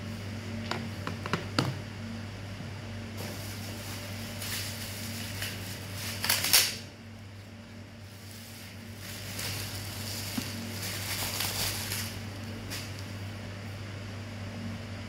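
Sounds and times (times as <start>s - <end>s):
low electrical hum: 0.0s - 15.0s
packaging rustling and crinkling: 3.2s - 6.8s, 8.1s - 13.1s.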